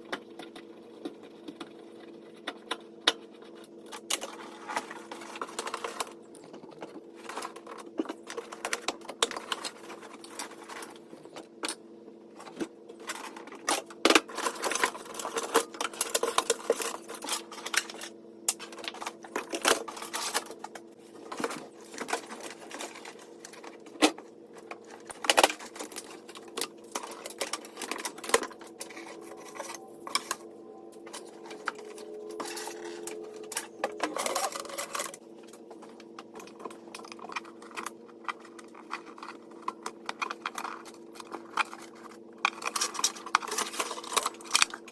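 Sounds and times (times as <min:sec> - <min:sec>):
steady low hum: 0:00.0 - 0:44.9
hand tools clicking and rattling: 0:31.1 - 0:35.2.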